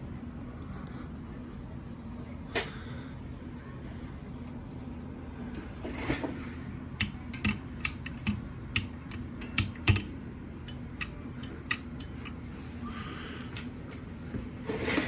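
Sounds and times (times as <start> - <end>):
film counter clicking: 7.0 - 12.5.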